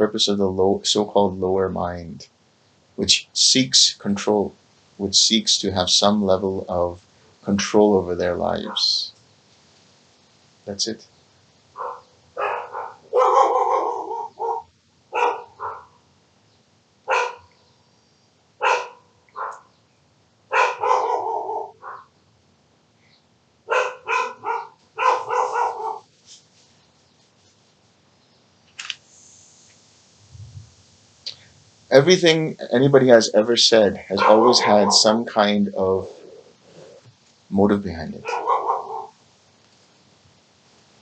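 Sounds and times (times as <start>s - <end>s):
dog barking: 8.6s - 8.8s, 11.8s - 16.0s, 17.1s - 17.5s, 18.6s - 19.7s, 20.5s - 22.1s, 23.7s - 26.0s, 34.1s - 35.2s, 38.2s - 39.1s.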